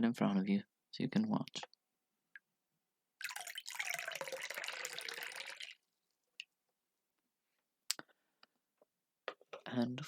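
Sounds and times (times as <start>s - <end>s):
tea pouring into a cup: 3.2s - 5.9s.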